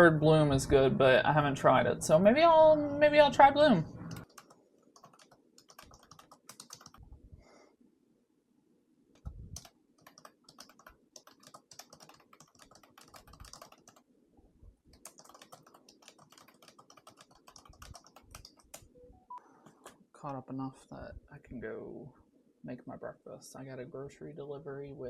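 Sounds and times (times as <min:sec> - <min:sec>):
typing on computer keyboard: 0:04.1 - 0:07.0, 0:09.2 - 0:14.0, 0:14.9 - 0:18.9.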